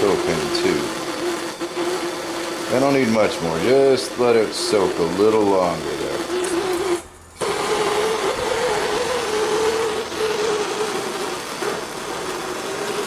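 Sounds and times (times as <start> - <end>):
propane torch hissing: 0.0 - 13.0.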